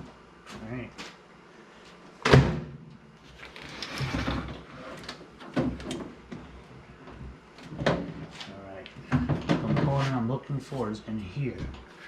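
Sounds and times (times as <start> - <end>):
microwave oven thumping: 2.2 - 2.8.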